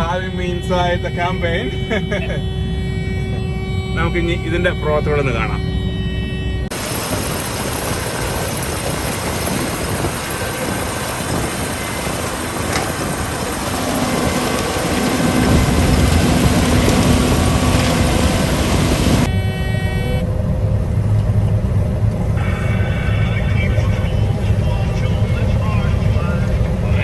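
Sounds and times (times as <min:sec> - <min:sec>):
short tone: 0:00.0 - 0:06.8, 0:10.4 - 0:20.4
combine harvester running: 0:00.0 - 0:27.0.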